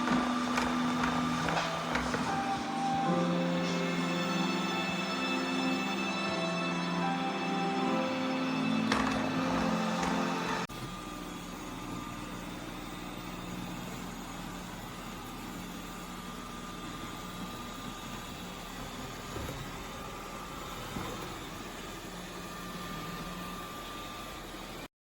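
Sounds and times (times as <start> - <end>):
faint knocks: 0.0 - 3.1
robot vacuum motor whirring: 0.0 - 5.0, 8.8 - 24.9.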